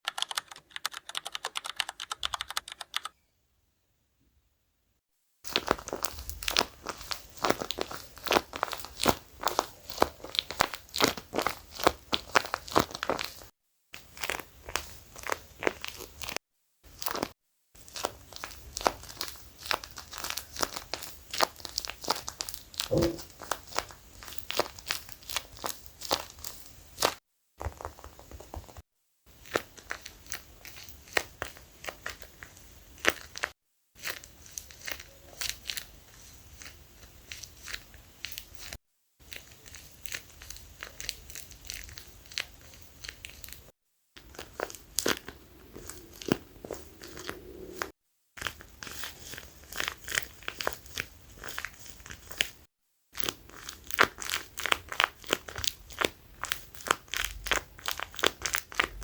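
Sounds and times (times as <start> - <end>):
plastic packaging crinkling: 29.4 - 43.6, 48.4 - 52.6.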